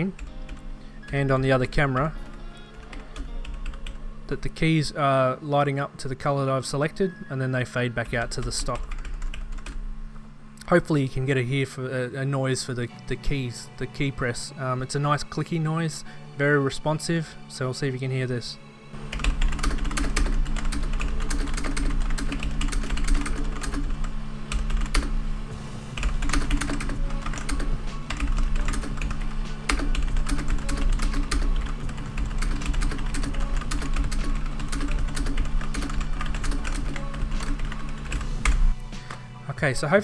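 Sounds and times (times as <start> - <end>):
fast typing on mechanical keyboard: 2.8 - 4.0, 8.3 - 9.8, 19.1 - 25.2, 26.0 - 38.7.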